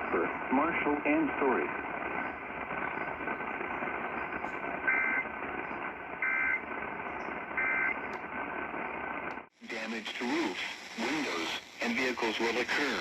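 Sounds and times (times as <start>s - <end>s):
digital data tone bursts: 0.0s - 5.3s
radio static hiss: 0.0s - 13.0s.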